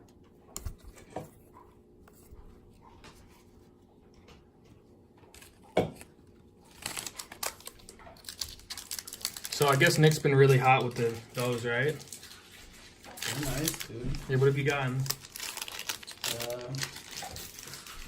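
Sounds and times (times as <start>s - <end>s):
cards clicking and rustling: 5.3s - 18.0s
wrapper crinkling: 6.6s - 18.0s.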